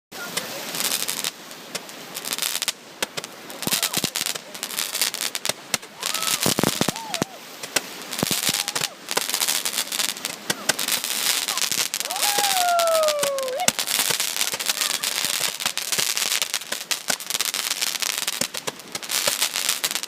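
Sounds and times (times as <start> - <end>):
fireworks bangs and crackles: 0.1 - 20.0
people calling out: 3.6 - 4.3, 6.0 - 7.5, 8.3 - 9.0, 10.5 - 13.8, 14.5 - 15.9.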